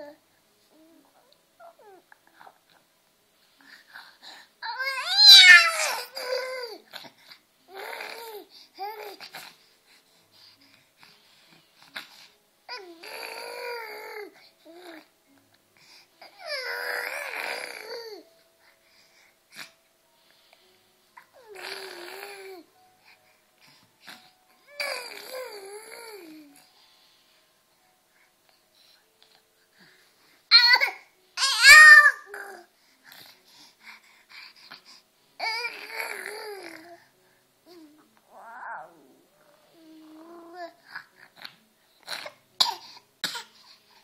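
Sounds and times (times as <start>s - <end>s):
baby crying: 4.6s - 7.0s, 16.2s - 18.3s, 30.5s - 32.7s, 37.7s - 40.8s
child whining and crying: 37.8s - 40.7s.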